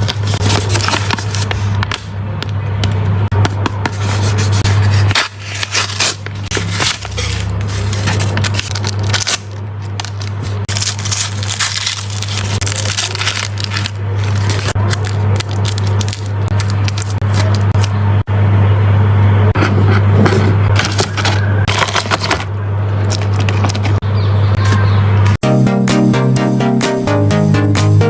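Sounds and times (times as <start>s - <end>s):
plastic packaging crinkling: 0.0s - 2.1s, 4.0s - 18.0s, 20.7s - 24.0s.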